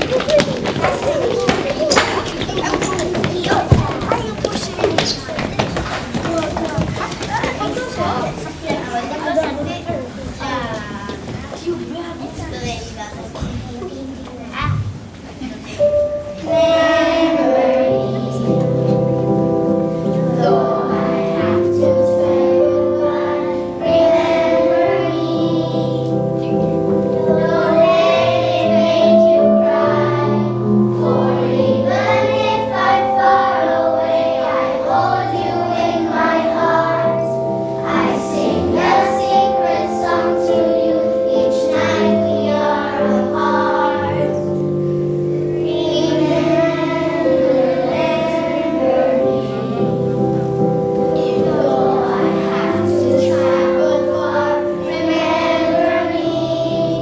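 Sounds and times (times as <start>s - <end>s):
children singing: 0.0s - 9.5s, 15.8s - 57.0s
instrumental accompaniment: 15.8s - 57.0s.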